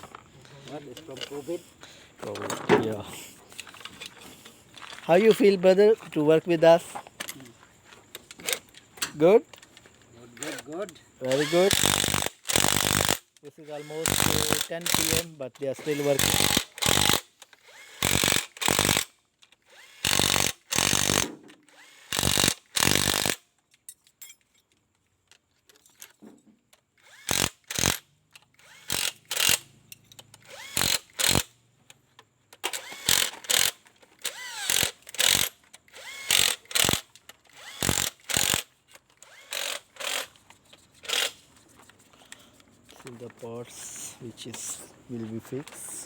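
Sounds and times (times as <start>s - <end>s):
workshop tool bursts: 11.2s - 19.1s, 30.4s - 31.5s, 32.6s - 40.3s.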